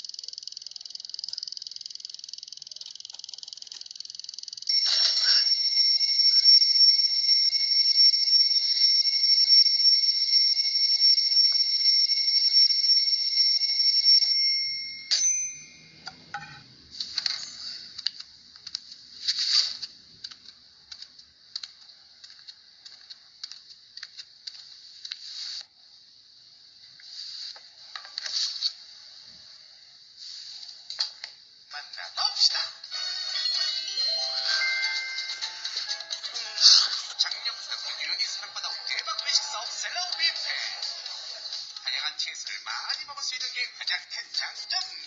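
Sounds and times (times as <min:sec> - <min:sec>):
alarm clock click: 0:04.7 - 0:15.7
alarm clock ringing: 0:04.7 - 0:16.6, 0:33.0 - 0:36.3
faint clicks and rustles: 0:17.0 - 0:25.7.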